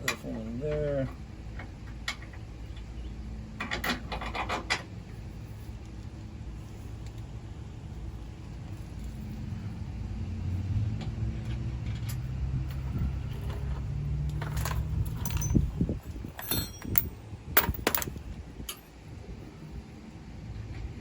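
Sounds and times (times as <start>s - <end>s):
metal parts clinking: 12.0s - 18.9s.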